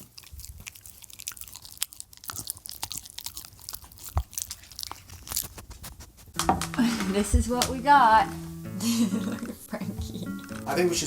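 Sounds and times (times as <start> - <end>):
dog chewing crunchy food: 0.0 - 6.9, 10.0 - 11.0.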